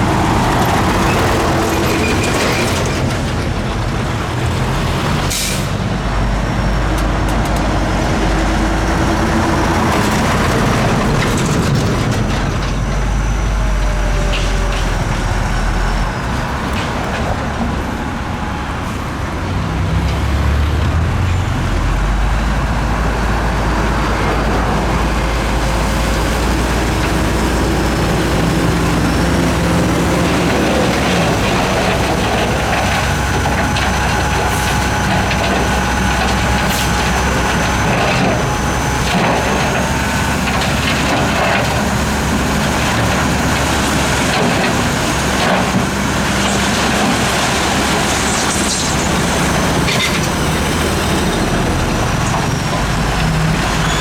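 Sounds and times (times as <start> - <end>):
heavy diesel machinery running: 0.0 - 54.0
faint high squeal: 53.8 - 54.0.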